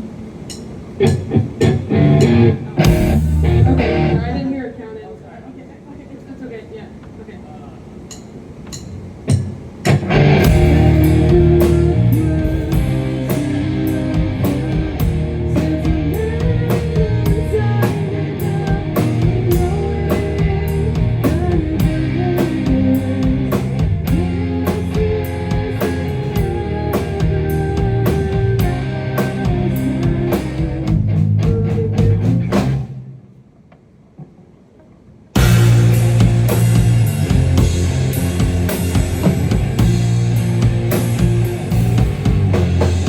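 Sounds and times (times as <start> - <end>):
live rock band playing: 1.0 - 4.4, 9.4 - 33.0, 35.4 - 43.0
sharp hits: 35.4 - 43.0.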